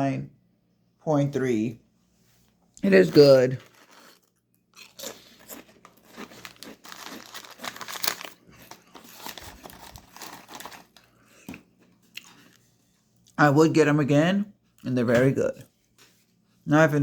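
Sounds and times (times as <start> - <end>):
plastic wrapper crinkling: 3.1 - 11.2.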